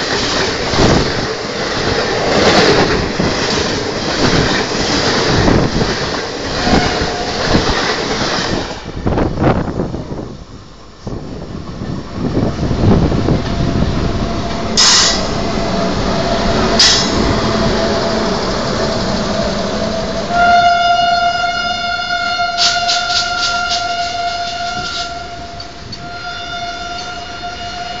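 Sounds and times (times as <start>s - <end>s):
train wheel clatters: 0.0s - 8.8s, 12.3s - 15.8s, 16.4s - 17.9s, 22.4s - 27.8s
train rail rumble: 0.0s - 28.0s
locomotive horn blast: 6.6s - 7.6s, 20.2s - 28.0s.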